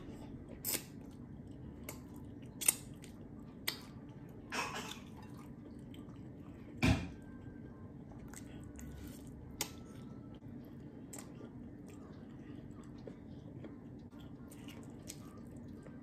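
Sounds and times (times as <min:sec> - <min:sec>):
wet chewing and mouth smacks: 0:00.4 - 0:06.6, 0:11.0 - 0:16.0.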